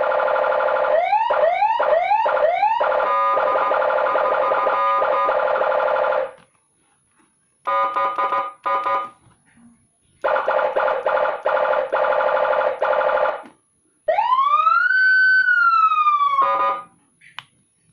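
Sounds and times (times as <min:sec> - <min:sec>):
siren wail: 0:00.0 - 0:06.3, 0:14.1 - 0:16.9.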